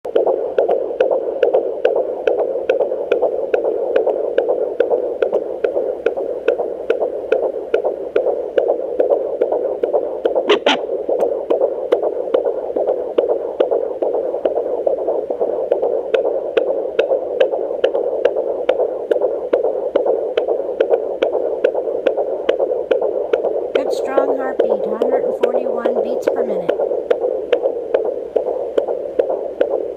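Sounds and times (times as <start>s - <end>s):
fetal heartbeat on doppler: 0.0s - 29.9s
scratchy probe crackle: 0.1s - 29.9s.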